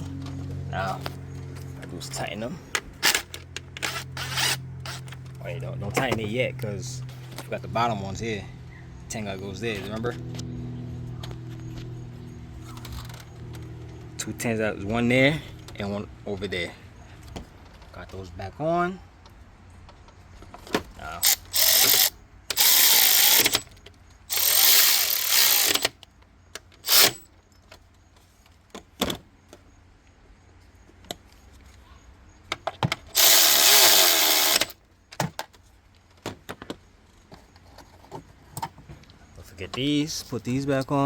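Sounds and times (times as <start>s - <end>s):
power tool whirring: 2.8s - 5.2s, 21.2s - 23.7s, 24.3s - 26.0s, 26.8s - 27.2s, 33.1s - 34.8s.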